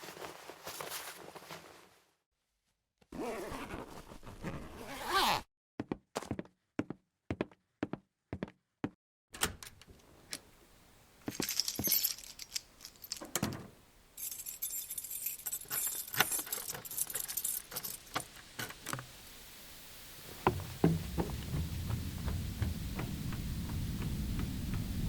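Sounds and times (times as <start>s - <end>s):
keys jangling: 11.2s - 13.5s, 14.2s - 18.3s.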